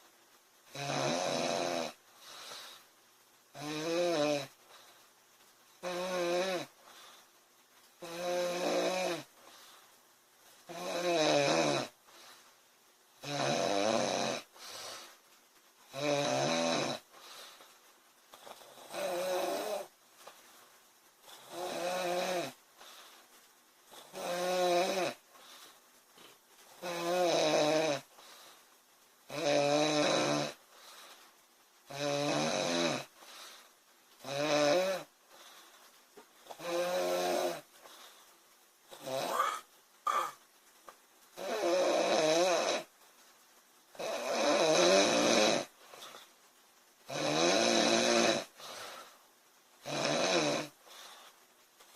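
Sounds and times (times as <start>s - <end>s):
woman snoring: 0.7s - 2.0s, 3.5s - 4.6s, 5.8s - 6.8s, 8.0s - 9.3s, 10.7s - 12.0s, 13.2s - 15.0s, 15.9s - 17.1s, 18.4s - 19.9s, 21.3s - 22.6s, 23.9s - 25.2s, 26.8s - 28.1s, 29.3s - 30.6s, 31.9s - 33.1s, 34.2s - 35.1s, 36.5s - 37.7s, 38.9s - 40.4s, 41.4s - 42.9s, 43.9s - 46.2s, 47.1s - 48.6s, 49.8s - 50.8s.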